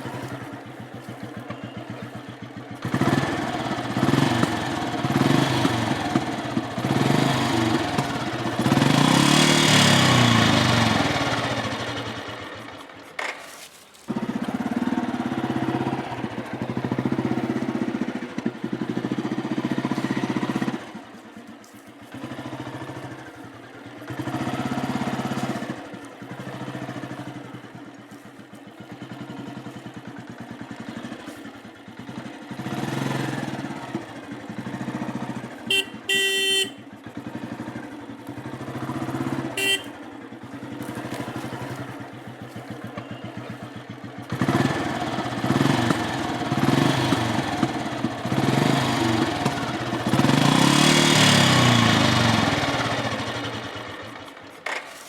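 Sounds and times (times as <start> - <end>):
motorcycle engine revving: 0.0 - 13.4, 14.1 - 55.0
motorcycle horn: 0.1 - 4.2, 34.9 - 42.0, 42.8 - 44.7.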